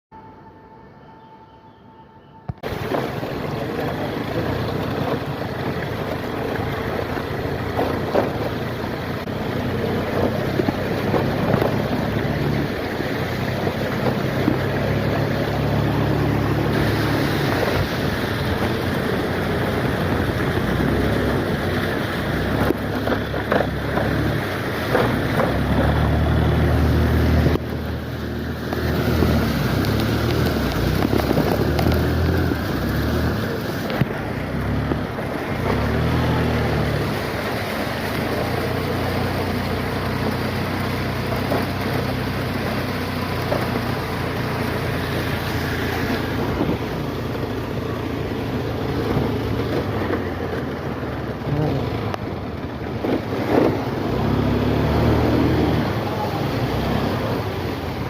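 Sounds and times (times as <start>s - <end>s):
rain hissing: 2.6s - 58.0s
wind buffeting microphone: 27.1s - 35.7s, 42.2s - 51.3s.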